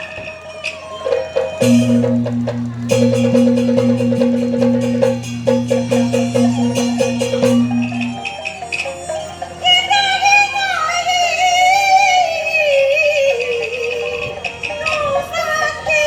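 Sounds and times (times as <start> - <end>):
wooden percussion strokes: 0.0 - 9.6
held low notes: 1.6 - 8.4.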